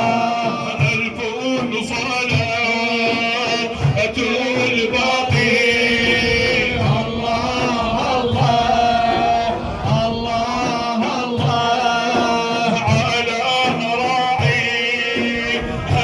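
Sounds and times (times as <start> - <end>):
man chanting: 0.0 - 16.0
low beat: 3.5 - 13.2.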